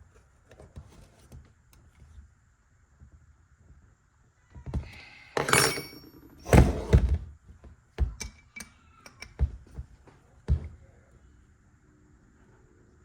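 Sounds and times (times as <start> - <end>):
metal tools clanking on metal: 5.4 - 7.0.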